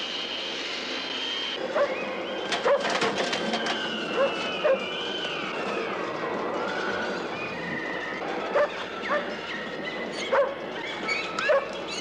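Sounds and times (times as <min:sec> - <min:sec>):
dog whining: 0:04.1 - 0:04.9, 0:08.5 - 0:09.3, 0:09.9 - 0:12.0
dog yelping: 0:04.2 - 0:04.8, 0:08.5 - 0:09.4, 0:10.1 - 0:12.0.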